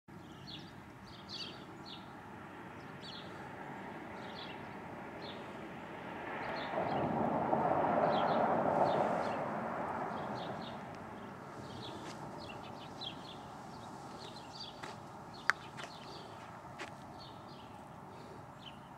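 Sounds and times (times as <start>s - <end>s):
small birds chirping: 0.1s - 7.1s, 8.1s - 18.9s
steady rushing noise: 2.5s - 16.8s.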